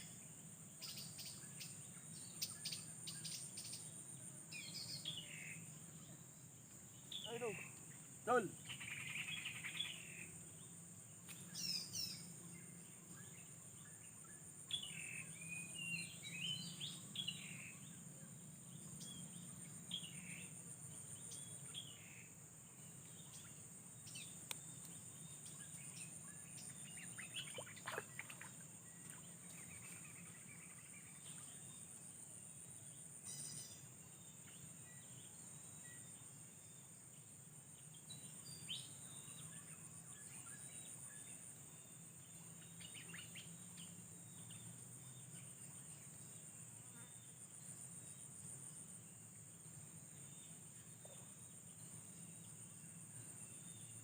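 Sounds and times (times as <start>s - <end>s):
insects trilling: 0.0s - 54.0s
bird chirps and calls: 7.1s - 10.1s.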